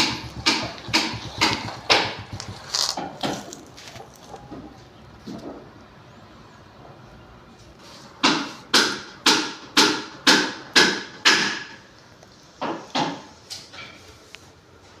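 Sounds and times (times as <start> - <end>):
hammer blows ringing: 0.0 - 2.9.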